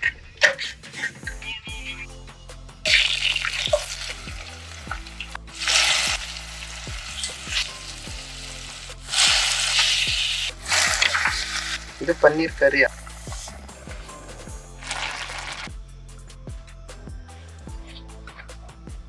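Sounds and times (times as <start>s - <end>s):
food sizzling in a pan: 2.9s - 15.7s.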